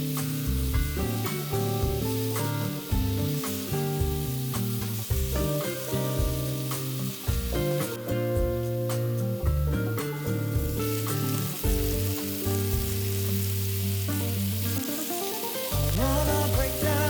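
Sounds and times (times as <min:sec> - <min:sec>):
background music: 0:00.0 - 0:17.0
food sizzling in a pan: 0:00.0 - 0:17.0
person singing: 0:15.7 - 0:17.0.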